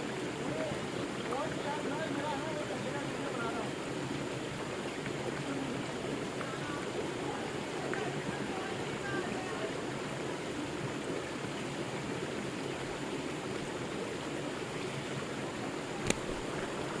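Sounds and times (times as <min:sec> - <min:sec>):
river water rushing: 0:00.0 - 0:17.0
sharp click: 0:16.0 - 0:16.4.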